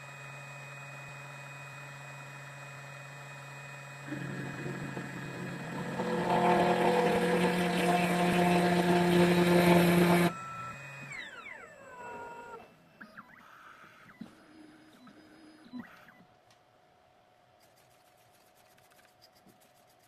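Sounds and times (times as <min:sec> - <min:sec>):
machine winding down whine: 0:00.0 - 0:16.2
key cutting machine grinding: 0:04.1 - 0:10.4.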